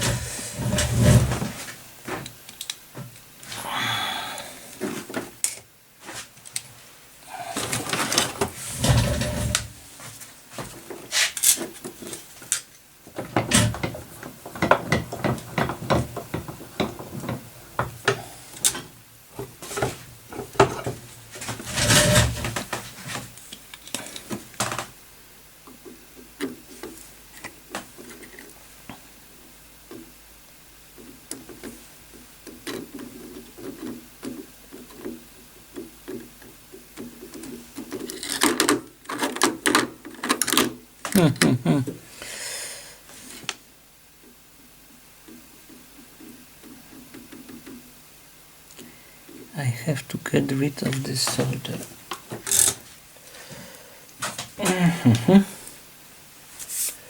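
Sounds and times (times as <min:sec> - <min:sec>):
tools handled on a workbench: 0:07.6 - 0:18.9.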